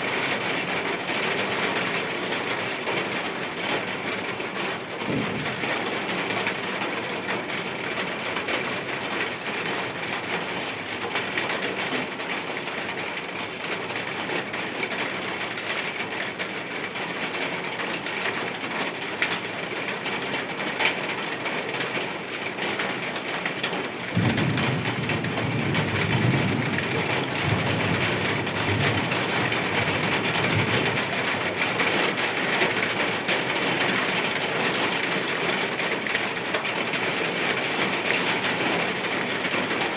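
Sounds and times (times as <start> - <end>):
steady rain: 0.0 - 39.9
thunder rumbling: 5.0 - 6.5, 24.1 - 31.8.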